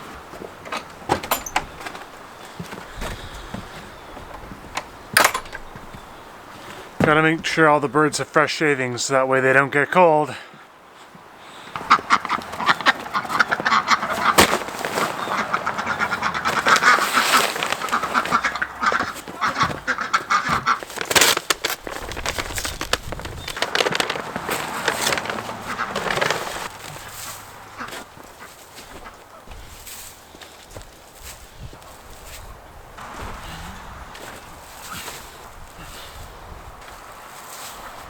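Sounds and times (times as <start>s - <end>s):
ducks quacking: 11.4s - 21.2s, 23.4s - 29.7s.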